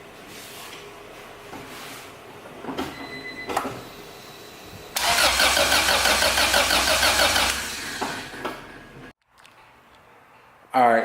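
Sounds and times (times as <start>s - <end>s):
car engine cranking on starter: 5.0s - 8.3s.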